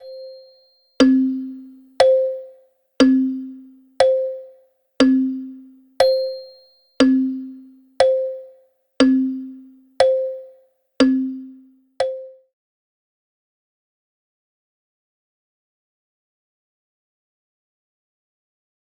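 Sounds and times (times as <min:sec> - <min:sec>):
wall clock ticking: 0:01.0 - 0:12.3.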